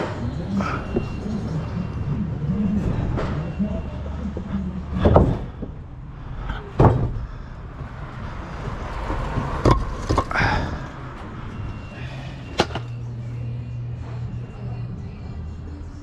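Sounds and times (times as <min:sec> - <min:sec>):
sharp knocks and bangs: 0:05.0 - 0:05.8, 0:06.8 - 0:07.3.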